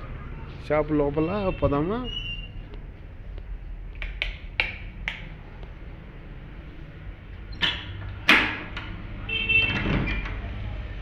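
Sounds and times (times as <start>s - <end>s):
steady low hum: 0.0s - 9.2s
sharp taps: 2.7s - 5.8s.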